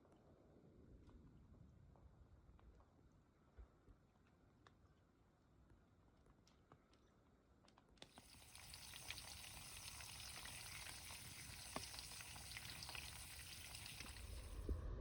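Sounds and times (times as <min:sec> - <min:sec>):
faint crackling hiss with ticks: 0:08.1 - 0:14.7.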